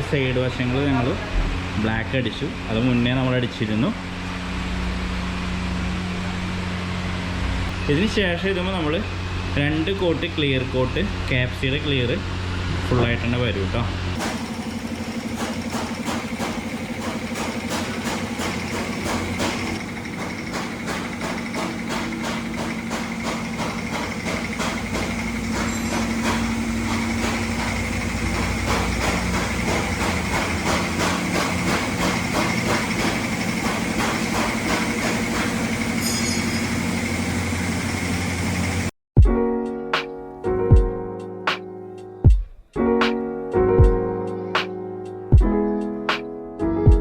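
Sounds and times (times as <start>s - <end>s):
motor humming: 4.2s - 7.8s, 14.2s - 38.9s
fast regular ticking knock: 14.2s - 36.0s.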